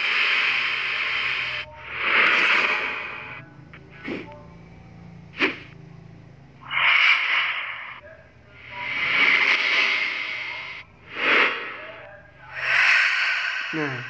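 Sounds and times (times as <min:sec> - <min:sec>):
swoosh sound effects: 0:06.6 - 0:08.0, 0:08.6 - 0:14.0.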